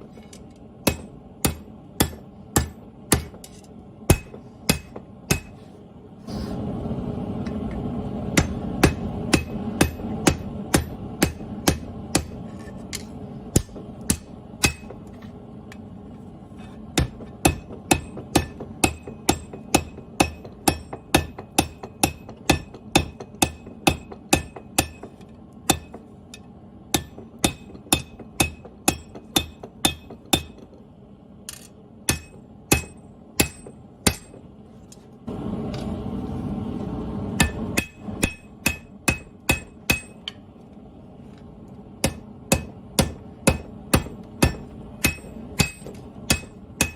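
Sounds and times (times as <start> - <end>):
hammer striking steel on anvil: 0.2 - 5.6, 8.3 - 15.1, 16.6 - 30.8, 31.5 - 34.5, 37.4 - 40.4, 42.0 - 46.9.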